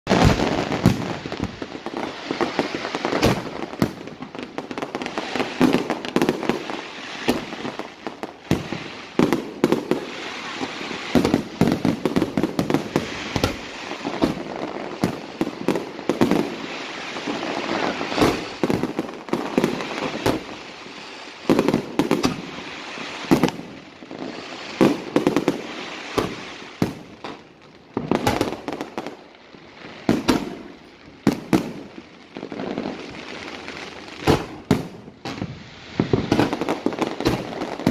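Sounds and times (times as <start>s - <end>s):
firework shells bursting: 0.1s - 20.6s, 21.5s - 23.8s, 34.2s - 37.9s
firework crackling: 0.1s - 37.9s.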